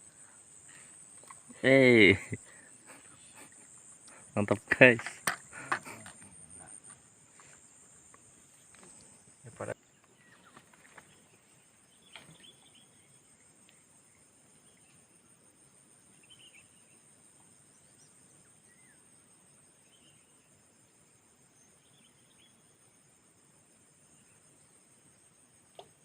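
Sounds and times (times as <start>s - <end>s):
faint insect chirps: 0.0s - 26.0s
insect chorus trilling: 0.0s - 26.0s
small click: 25.7s - 26.0s.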